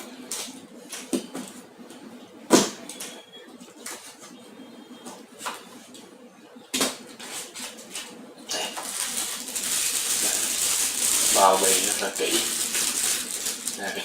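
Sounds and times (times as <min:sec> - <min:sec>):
rustling paper and cardboard: 0:07.2 - 0:14.0.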